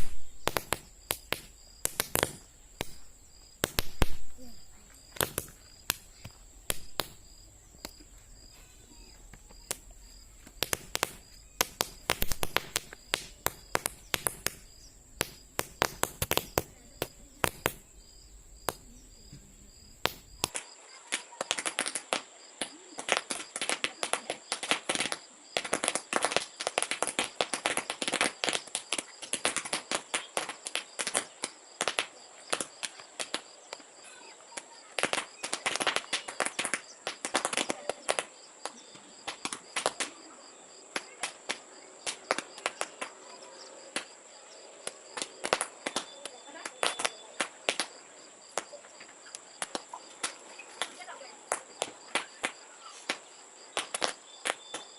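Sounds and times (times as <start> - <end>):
toy caps popping: 0.0 - 8.5, 9.2 - 17.9, 18.6 - 20.7.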